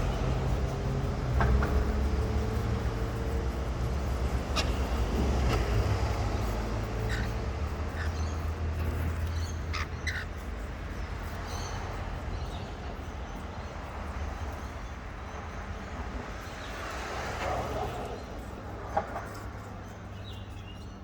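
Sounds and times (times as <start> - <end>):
birds giving harsh calls: 0.0 - 15.4.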